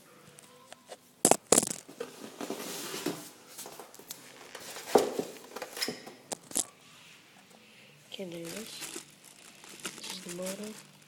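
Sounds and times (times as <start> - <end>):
packaging rustling: 1.3 - 6.7, 8.2 - 11.0.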